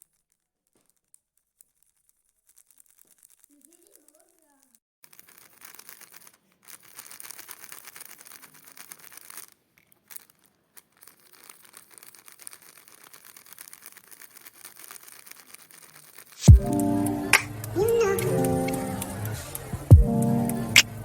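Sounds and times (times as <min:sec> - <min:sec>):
wrapping crinkling and tearing: 0:00.0 - 0:16.5
music: 0:16.5 - 0:21.0.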